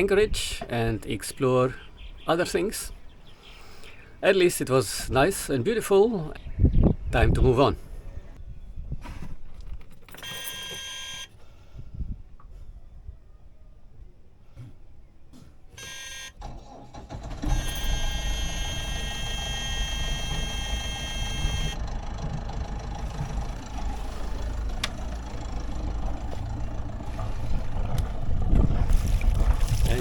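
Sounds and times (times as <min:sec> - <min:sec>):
high alarm tone: 0:10.2 - 0:11.3, 0:15.8 - 0:16.4, 0:17.5 - 0:21.8
short high warning tone: 0:15.8 - 0:16.4, 0:17.5 - 0:21.8
boat engine starting and running: 0:15.8 - 0:30.0.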